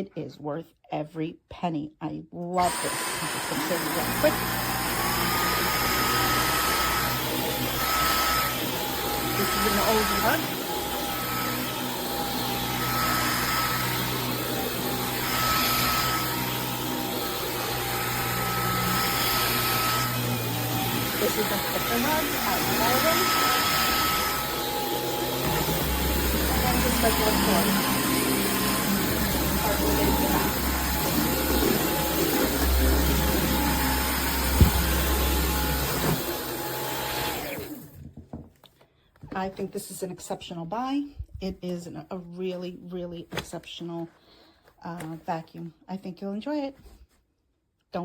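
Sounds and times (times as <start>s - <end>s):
vacuum cleaner running: 2.6s - 38.0s.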